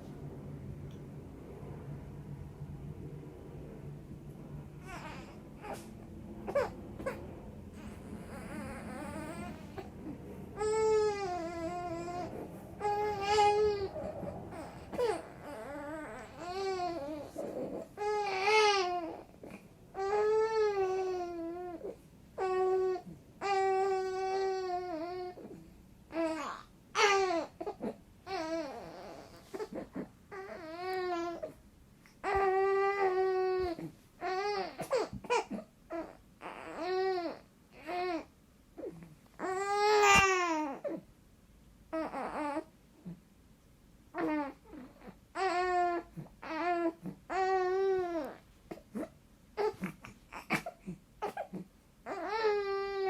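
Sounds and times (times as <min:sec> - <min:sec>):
baby crying: 0:04.8 - 0:05.9, 0:10.6 - 0:19.4, 0:32.2 - 0:41.0, 0:49.0 - 0:53.0.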